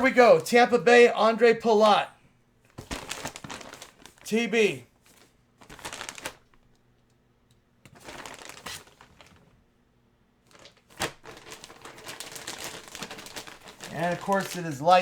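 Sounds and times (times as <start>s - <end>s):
packaging rustling and crinkling: 2.7s - 6.8s, 7.9s - 9.5s, 10.4s - 15.0s.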